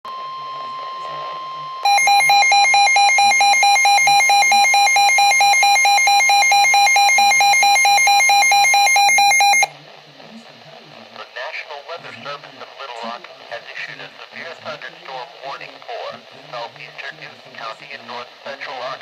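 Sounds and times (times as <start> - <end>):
steady warning tone: 0.1 - 9.7
two-pitch electronic alarm beeping: 0.3 - 9.7.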